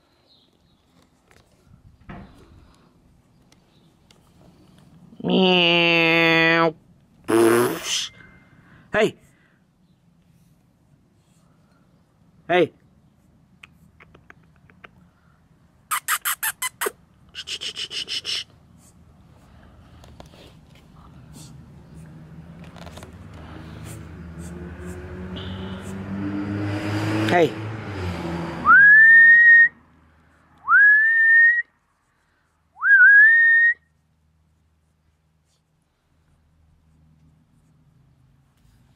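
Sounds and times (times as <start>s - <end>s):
high-pitched squeaks: 15.9s - 18.5s
person whistling: 28.6s - 29.7s, 30.7s - 31.7s, 32.8s - 33.8s.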